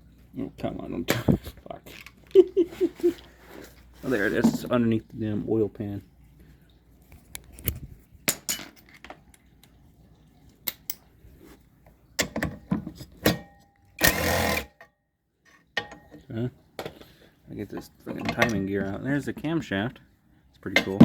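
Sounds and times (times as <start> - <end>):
metal tools clinking: 8.3 - 9.2, 17.8 - 19.4
power tool running: 14.0 - 14.8.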